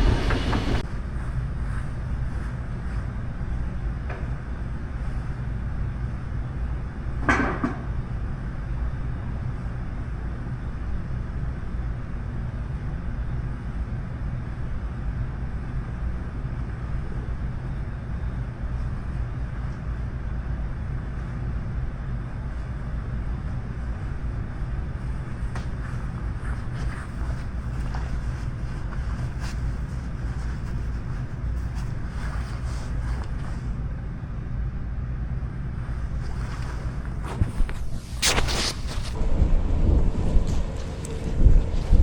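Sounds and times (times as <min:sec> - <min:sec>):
wind buffeting microphone: 0:39.2 - 0:42.0.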